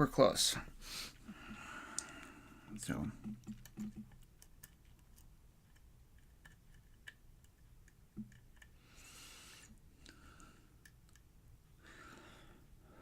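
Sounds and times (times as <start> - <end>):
breathy hiss: 8.8 - 10.6.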